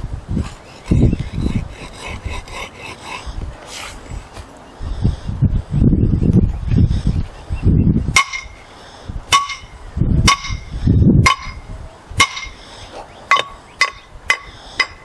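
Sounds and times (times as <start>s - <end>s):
hammer striking steel: 8.2s - 8.6s, 9.3s - 9.7s, 10.3s - 10.6s, 12.2s - 12.6s.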